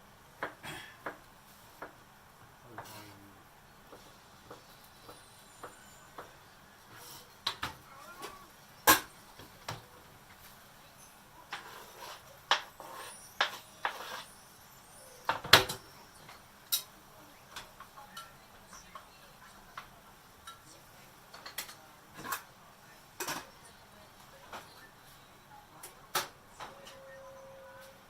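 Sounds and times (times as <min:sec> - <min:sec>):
utensils and dishes clinking: 0:03.9 - 0:22.6, 0:23.2 - 0:23.8.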